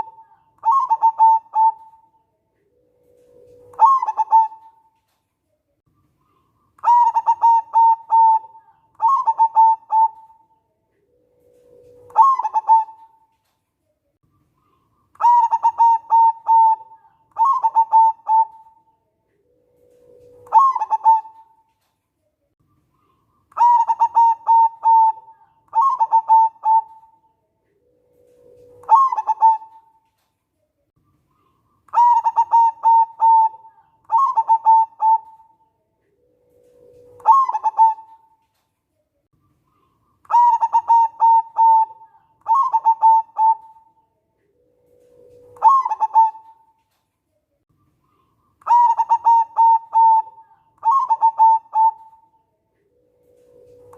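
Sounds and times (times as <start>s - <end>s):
dove cooing: 0.0s - 5.0s, 6.2s - 13.4s, 14.6s - 21.9s, 23.0s - 30.3s, 31.2s - 38.6s, 39.6s - 47.0s, 47.9s - 53.9s.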